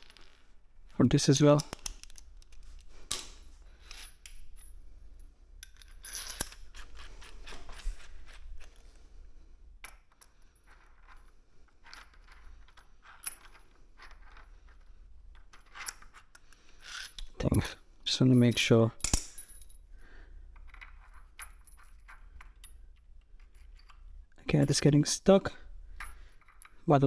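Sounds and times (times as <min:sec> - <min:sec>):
hand tools clinking: 0:00.9 - 0:04.8.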